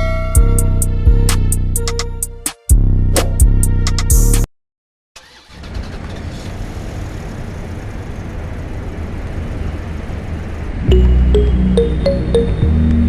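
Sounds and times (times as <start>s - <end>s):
music: 0.0s - 4.5s, 10.9s - 13.0s
vehicle engines rumbling: 5.7s - 13.0s.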